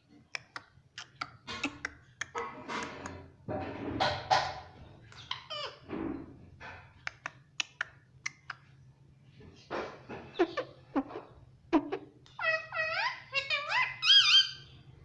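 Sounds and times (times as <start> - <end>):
parrot chattering: 0.3 - 3.2, 5.2 - 5.9, 7.1 - 8.7, 10.3 - 14.8.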